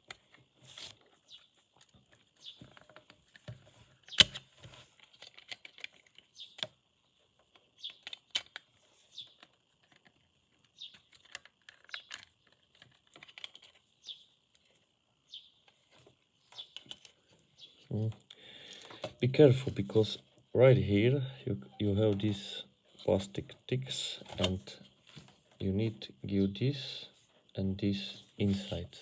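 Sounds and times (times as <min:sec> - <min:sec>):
plastic mouse parts clicking: 0:05.0 - 0:06.7, 0:07.8 - 0:10.2, 0:10.8 - 0:13.8.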